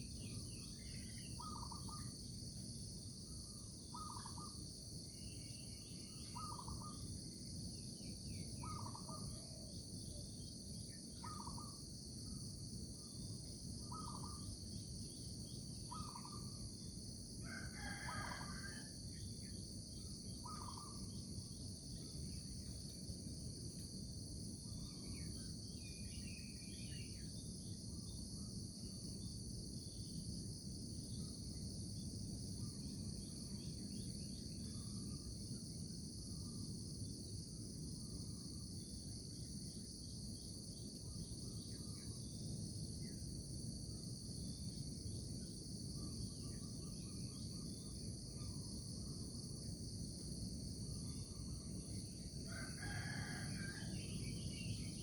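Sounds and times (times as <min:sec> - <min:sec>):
crickets and insects chirring: 0:00.0 - 0:55.0
rooster crowing: 0:17.4 - 0:18.9, 0:52.5 - 0:54.1.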